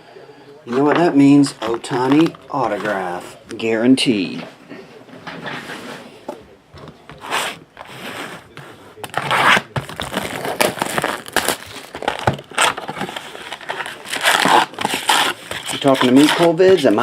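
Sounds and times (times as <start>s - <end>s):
plastic wrapping crinkling and tearing: 9.0s - 17.0s.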